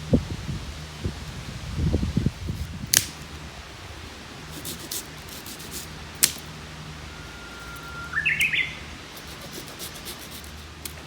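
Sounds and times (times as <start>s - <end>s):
low hum: 0.0s - 11.0s
sharp clicks: 6.2s - 6.5s
bird whistling: 7.0s - 9.0s.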